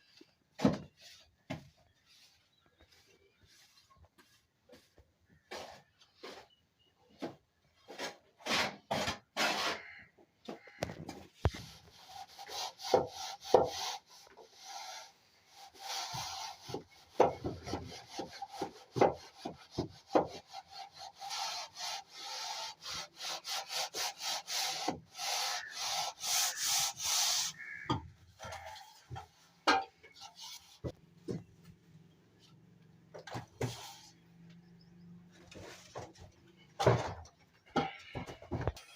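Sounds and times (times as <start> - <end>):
trowel scraping plaster: 0.9 - 6.9, 7.8 - 10.0, 11.4 - 29.3, 30.0 - 31.0.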